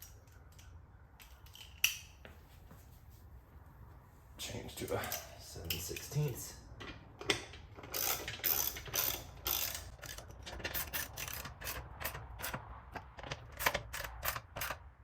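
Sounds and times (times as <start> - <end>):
ratchet wrench clicking: 7.8 - 12.7, 13.6 - 14.9.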